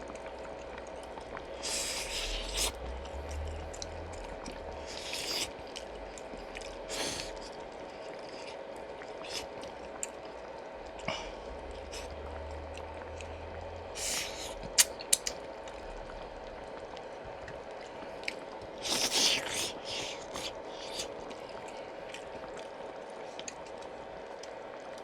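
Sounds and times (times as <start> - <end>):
faint hum: 0.0 - 25.0
person slurping and chewing: 1.4 - 10.1, 14.0 - 15.3, 18.2 - 22.3.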